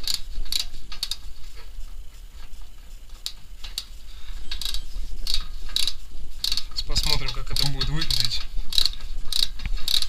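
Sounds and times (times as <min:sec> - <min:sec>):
ratchet wrench clicking: 0:00.0 - 0:01.2, 0:04.5 - 0:10.0.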